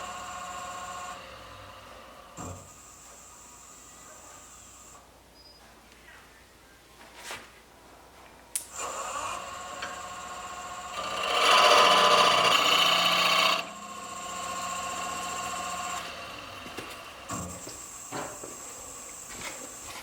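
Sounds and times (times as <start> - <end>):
wood lathe clicking on: 0.0 - 2.1, 8.7 - 20.0
lathe running with whine: 0.0 - 5.0, 8.8 - 20.0
tool rasping on spinning wood: 10.9 - 20.0.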